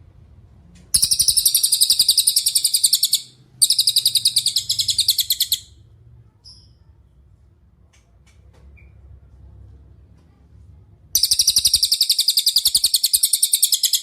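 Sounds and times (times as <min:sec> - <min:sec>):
songbird trilling: 0:01.0 - 0:05.7, 0:11.2 - 0:14.0.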